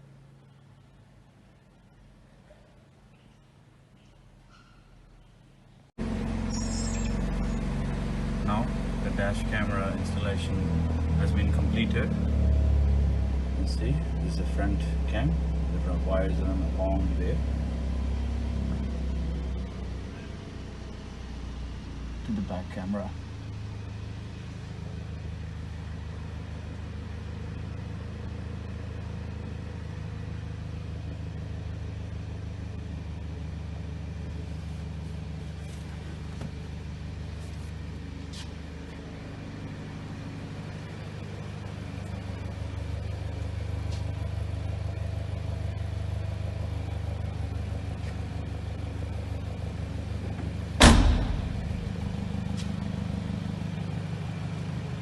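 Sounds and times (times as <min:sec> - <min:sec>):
car engine idling: 0:05.9 - 0:55.0
loud thump: 0:50.4 - 0:52.7.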